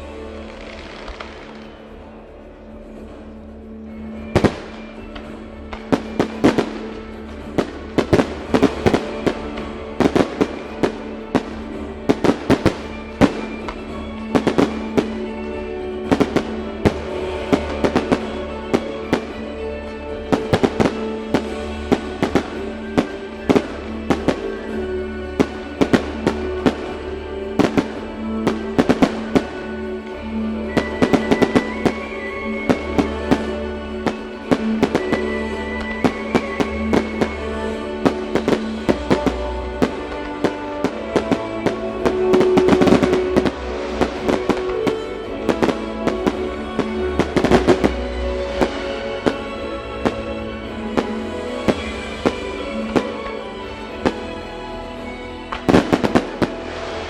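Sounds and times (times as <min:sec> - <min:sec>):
celtic-style music with drone: 0:00.0 - 0:57.0.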